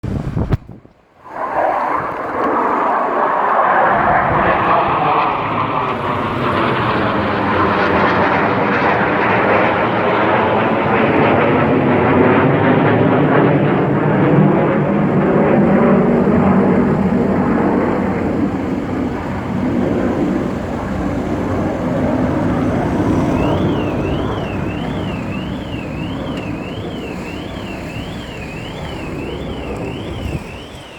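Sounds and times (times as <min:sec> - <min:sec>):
military jets flying past: 0:00.0 - 0:30.9
faint warbling high tone: 0:22.0 - 0:30.9.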